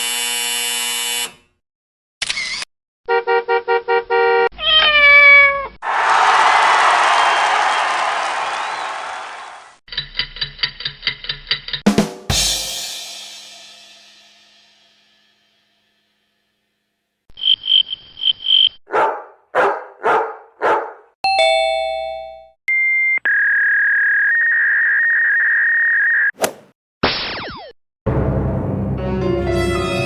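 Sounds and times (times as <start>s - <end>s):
bark-like calls: 18.9s - 21.1s
quick swish: 26.4s - 26.7s.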